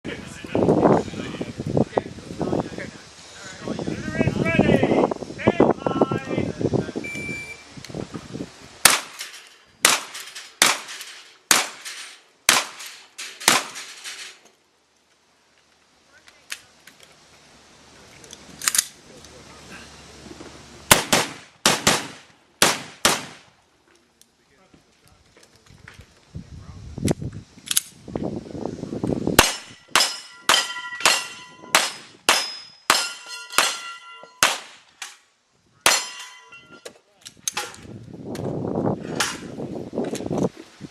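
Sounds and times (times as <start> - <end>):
gunshots: 8.8 - 14.1, 20.9 - 23.5, 29.4 - 34.8
gunshots with echo: 20.9 - 23.4
steel targets ringing: 29.4 - 34.7, 35.9 - 36.9.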